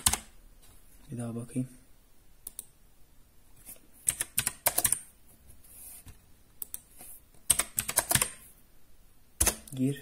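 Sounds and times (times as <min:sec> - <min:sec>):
mechanical keyboard typing: 0:00.0 - 0:00.3, 0:04.0 - 0:05.1, 0:07.5 - 0:08.4, 0:09.4 - 0:09.9.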